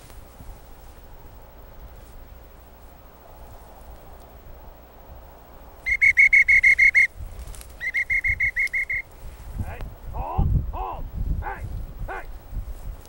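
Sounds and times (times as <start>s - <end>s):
shrill dog whistle pips: 5.9s - 7.1s, 7.8s - 9.1s.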